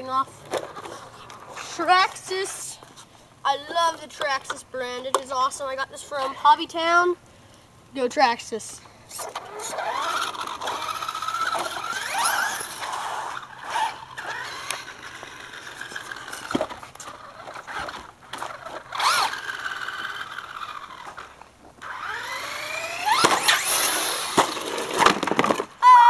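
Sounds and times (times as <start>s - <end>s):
rc car motor whining: 9.1s - 26.0s.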